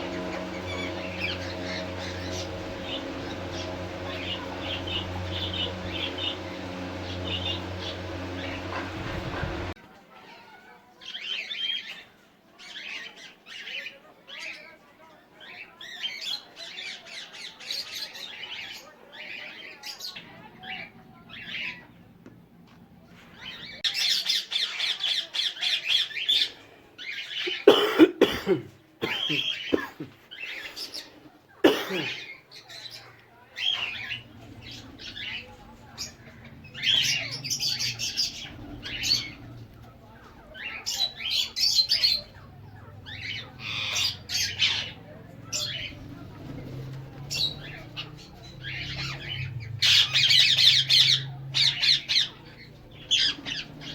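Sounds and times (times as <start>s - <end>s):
parrots squawking: 0.0s - 9.8s, 33.6s - 53.9s.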